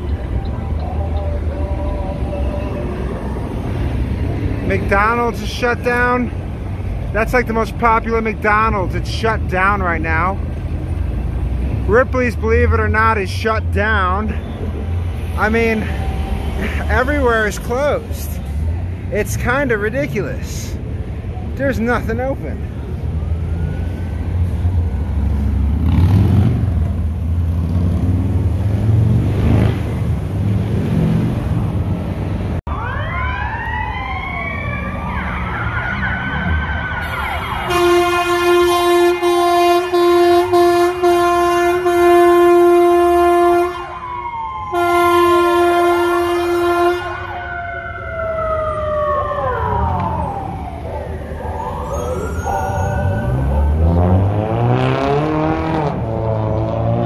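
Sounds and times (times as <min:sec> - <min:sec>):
ambulance siren wailing: 0:00.0 - 0:06.4, 0:11.9 - 0:18.1, 0:22.8 - 0:25.2, 0:32.6 - 0:55.5
street traffic rumble: 0:00.0 - 0:57.0
horn blasts: 0:37.6 - 0:44.0, 0:44.7 - 0:47.4.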